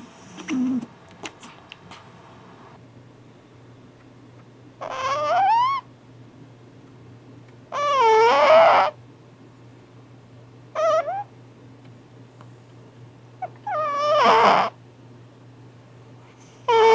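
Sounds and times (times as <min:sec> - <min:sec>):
cat snoring with squeaky snores: 0:07.8 - 0:09.0, 0:13.6 - 0:14.8, 0:16.7 - 0:16.9.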